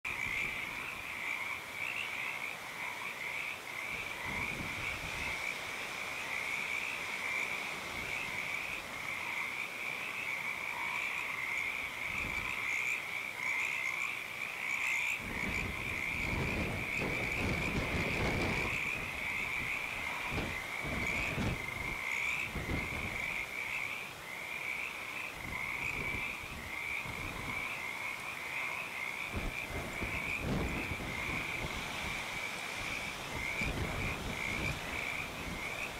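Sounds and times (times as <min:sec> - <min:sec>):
chorus of frogs trilling: 0:00.1 - 0:35.9.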